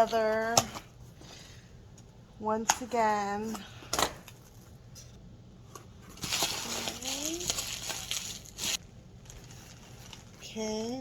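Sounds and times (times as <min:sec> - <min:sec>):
packaging crinkling and rustling: 0:06.0 - 0:10.6.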